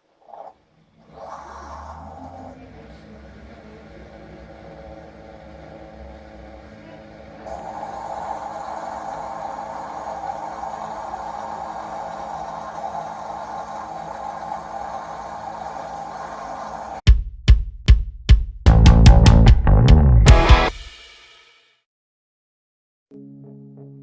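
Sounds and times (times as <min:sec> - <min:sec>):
machine humming: 0:00.8 - 0:17.0.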